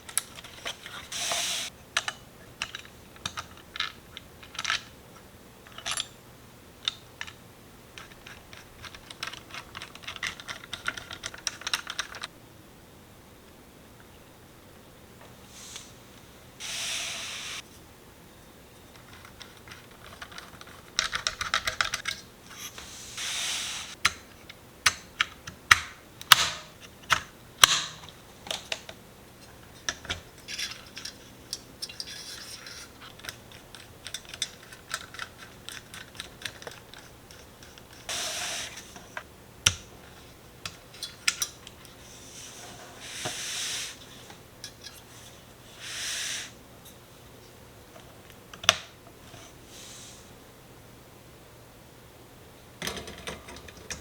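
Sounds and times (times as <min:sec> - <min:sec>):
clicks and taps of plastic and metal: 0:08.0 - 0:12.3, 0:24.0 - 0:29.0, 0:48.3 - 0:48.9.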